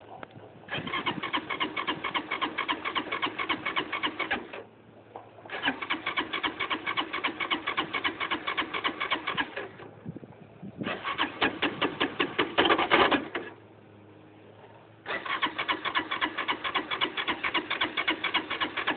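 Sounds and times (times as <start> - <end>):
motorcycle engine cranking: 0.7 - 4.7, 5.5 - 9.9, 10.8 - 13.6, 15.0 - 18.9.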